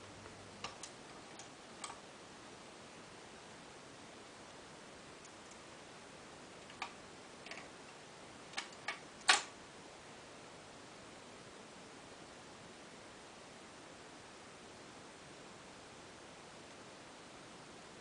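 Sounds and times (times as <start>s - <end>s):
faint steady hiss: 0.0s - 18.0s
sharp clicks: 8.5s - 9.5s.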